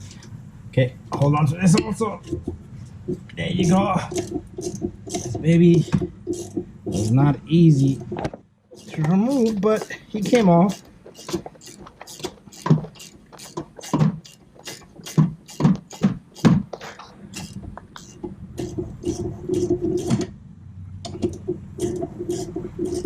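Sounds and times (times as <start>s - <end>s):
hand tools clicking on metal: 3.6s - 7.2s, 8.7s - 18.8s.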